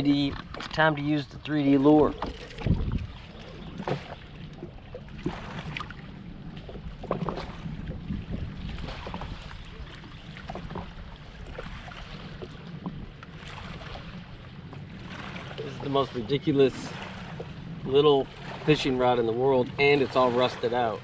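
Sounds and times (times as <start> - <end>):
low rumble of boat on water: 0.0 - 21.0.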